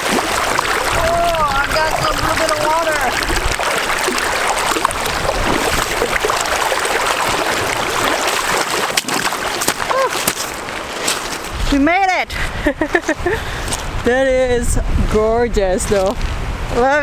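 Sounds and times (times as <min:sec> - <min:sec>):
wading in boots: 0:00.0 - 0:12.1
fast river rushing: 0:00.0 - 0:12.2.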